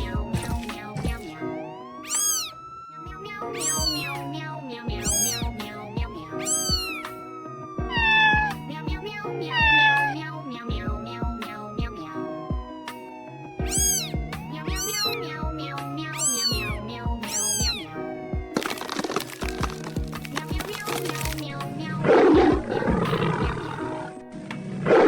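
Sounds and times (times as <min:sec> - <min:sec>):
music with steady beat: 0:00.0 - 0:01.4, 0:04.9 - 0:10.0, 0:10.7 - 0:18.7, 0:19.4 - 0:20.8
cat meows: 0:02.0 - 0:02.6, 0:03.3 - 0:04.2, 0:04.9 - 0:05.6, 0:06.4 - 0:07.1, 0:07.9 - 0:10.3, 0:13.6 - 0:18.0.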